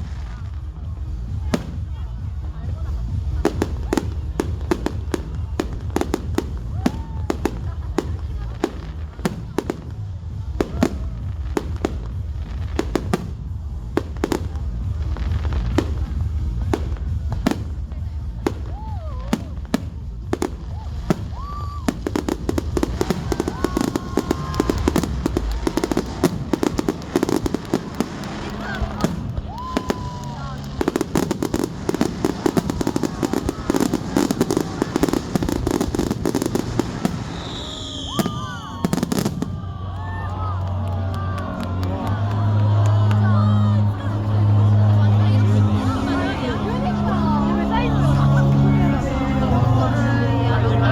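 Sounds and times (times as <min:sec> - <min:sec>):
low rumble: 0:00.0 - 0:37.4
fireworks bangs: 0:00.0 - 0:46.6
high firework whistle: 0:20.8 - 0:39.7.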